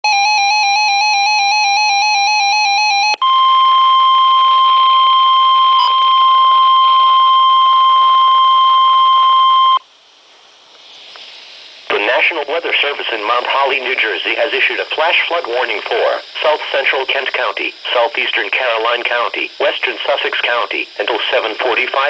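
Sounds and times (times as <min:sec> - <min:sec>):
warbling electronic alarm: 0:00.1 - 0:09.8
faint radio hiss: 0:04.6 - 0:22.0.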